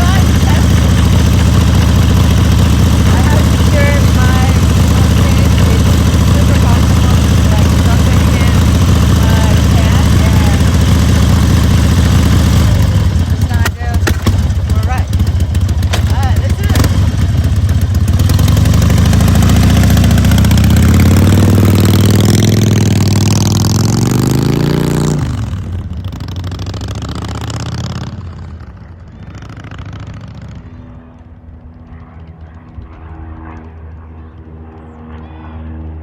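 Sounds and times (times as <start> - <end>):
motorcycle engine accelerating: 0.0 - 36.0.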